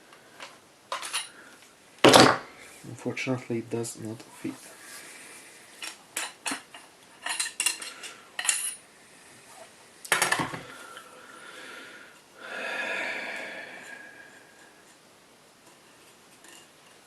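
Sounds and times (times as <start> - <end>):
metal parts clinking: 0.9 - 1.3, 5.8 - 8.8.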